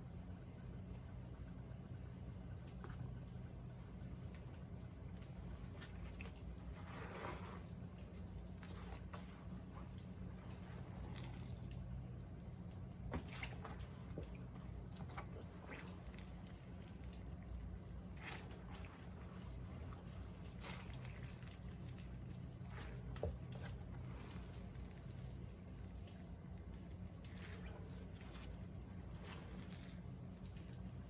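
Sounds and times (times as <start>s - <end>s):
steady low hum: 0.0s - 31.0s
wet clicks of food in liquid: 7.8s - 31.0s.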